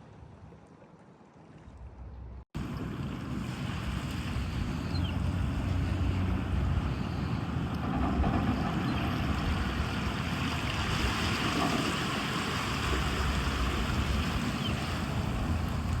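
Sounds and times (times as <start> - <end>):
wind buffeting microphone: 1.8 - 16.0.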